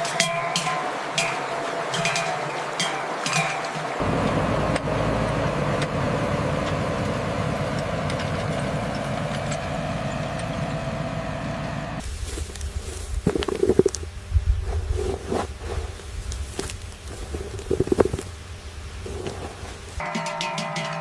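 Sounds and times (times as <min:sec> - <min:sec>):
motor running with low rumble: 0:04.0 - 0:20.0.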